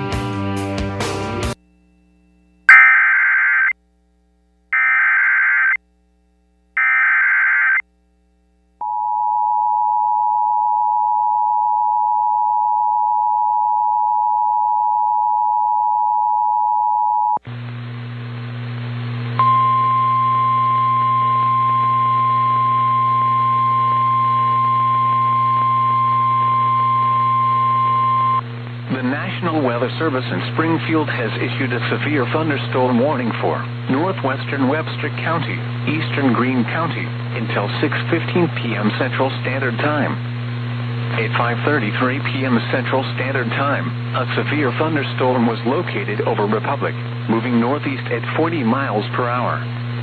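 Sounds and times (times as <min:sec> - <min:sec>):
two-tone attention signal: 0:02.7 - 0:03.7
weather radio alarm tone: 0:02.7 - 0:03.7, 0:04.8 - 0:05.8, 0:06.8 - 0:07.8, 0:19.4 - 0:28.4
radio hiss and hum: 0:17.4 - 0:50.0.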